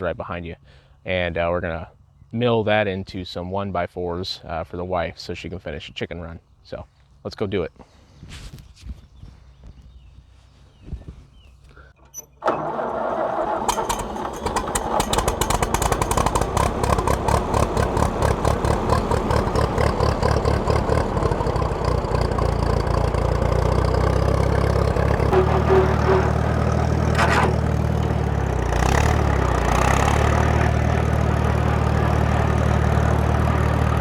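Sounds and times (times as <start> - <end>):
tractor engine starting and running: 10.7 - 34.0.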